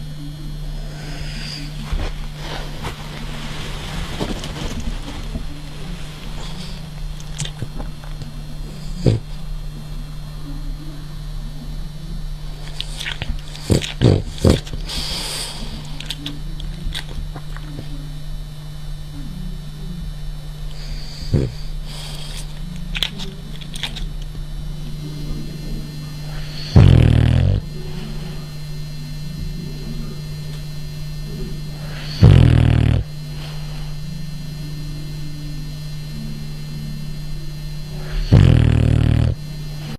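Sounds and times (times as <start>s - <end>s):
dog snoring: 0.6s - 9.6s, 12.2s - 18.0s, 20.7s - 28.7s, 31.2s - 35.6s, 37.9s - 39.9s.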